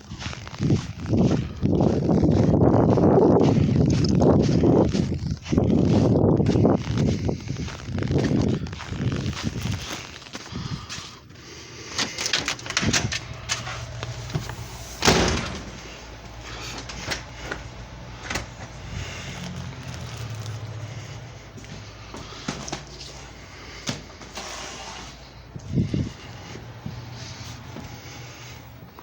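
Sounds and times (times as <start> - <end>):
low steady hum: 11.3 - 24.0.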